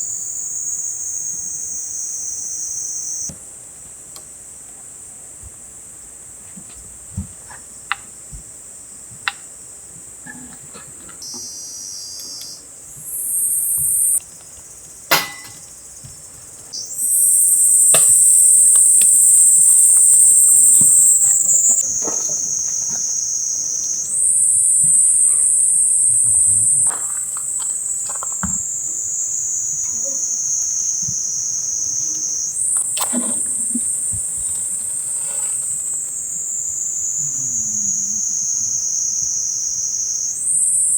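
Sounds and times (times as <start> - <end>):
shrill insect chorus: 0.0 - 6.4, 11.2 - 40.9
sharp knock: 15.1 - 15.7.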